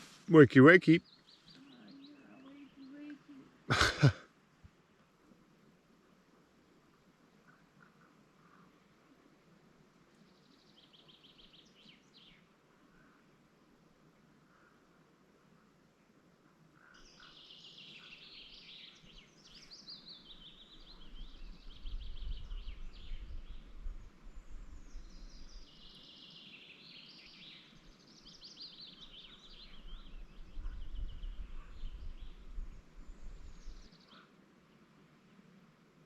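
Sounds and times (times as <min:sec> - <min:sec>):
songbirds singing: 0:00.0 - 0:04.1, 0:10.1 - 0:13.3, 0:16.7 - 0:35.6.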